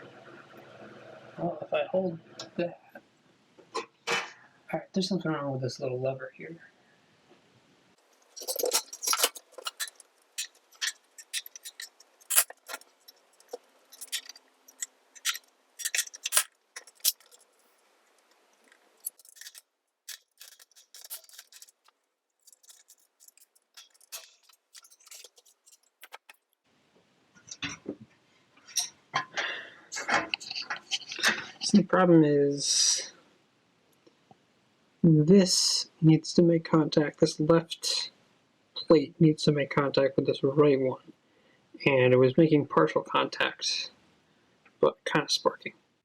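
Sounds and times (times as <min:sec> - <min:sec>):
small metallic clicks and taps: 0:18.6 - 0:26.5.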